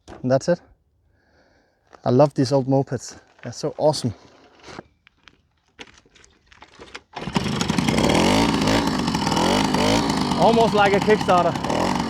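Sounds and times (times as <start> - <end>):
moped engine revving: 7.2 - 12.0.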